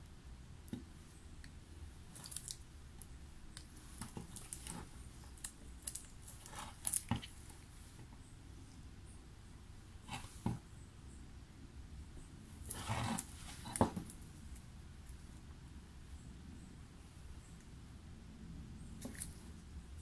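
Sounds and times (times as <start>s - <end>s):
clicks and scrapes of waxing instruments: 1.4s - 8.2s.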